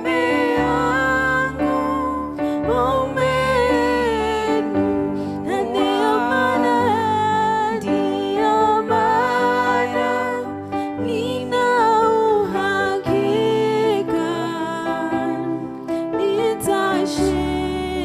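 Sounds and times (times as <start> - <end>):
person singing long notes: 0.0 - 15.6.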